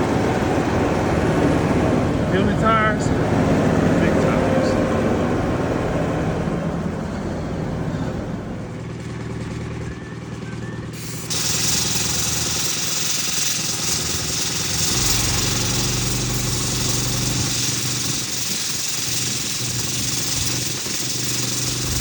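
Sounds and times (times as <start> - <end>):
engine idling: 0.0 - 22.0
steady hiss: 11.0 - 22.0.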